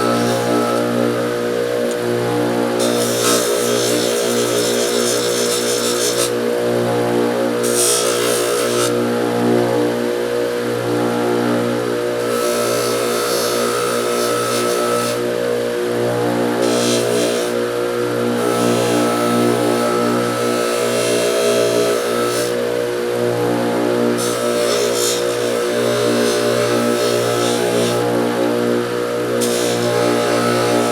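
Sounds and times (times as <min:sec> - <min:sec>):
steel grinding on abrasive wheel: 0:00.0 - 0:01.0
electric grinder motor running: 0:00.0 - 0:30.9.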